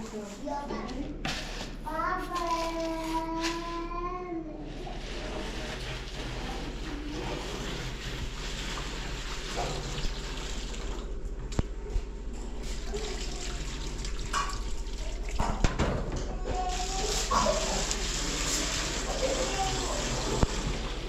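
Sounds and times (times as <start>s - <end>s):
running water splashing: 12.6s - 15.6s, 16.6s - 21.0s.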